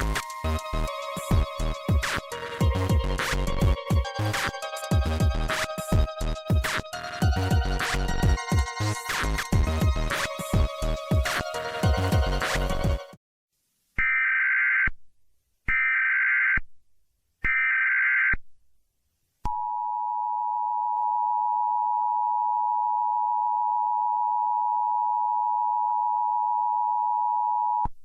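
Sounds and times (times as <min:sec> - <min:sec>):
music: 0:00.0 - 0:13.2.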